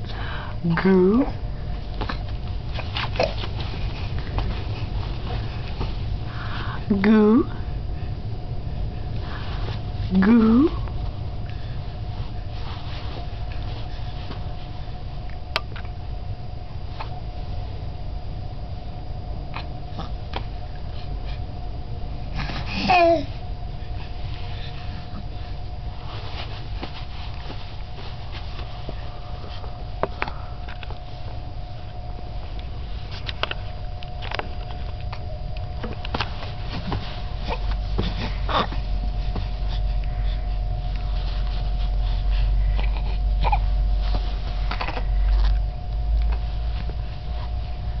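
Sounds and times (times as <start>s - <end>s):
faint hum: 0.0s - 48.0s
low rumble: 0.0s - 48.0s
baby cooing: 37.4s - 38.8s, 42.8s - 43.7s.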